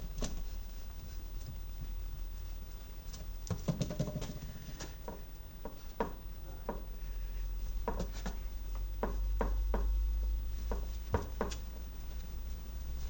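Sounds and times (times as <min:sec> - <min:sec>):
steady low hum: 0:00.0 - 0:13.0
light taps and knocks: 0:03.1 - 0:07.0, 0:07.8 - 0:12.3.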